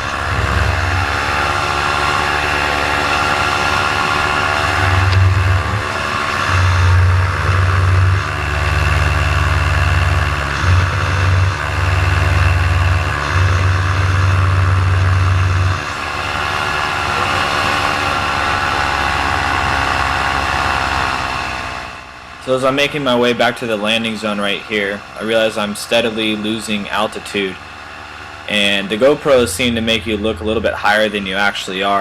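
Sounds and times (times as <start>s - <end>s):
heavy low rumble: 0.0s - 32.0s
paramotor engine running: 0.0s - 32.0s.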